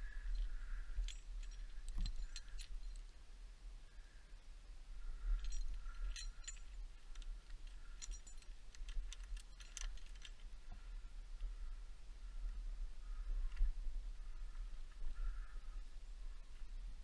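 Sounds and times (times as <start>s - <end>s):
steady low rumble: 0.0s - 17.0s
light metallic clinking: 0.1s - 3.2s, 5.1s - 10.6s.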